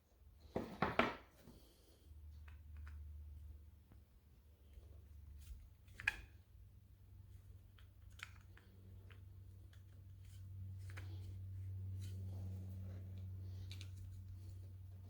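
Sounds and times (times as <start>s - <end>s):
low steady hum: 0.0s - 15.0s
small metal parts clicking: 7.6s - 11.1s.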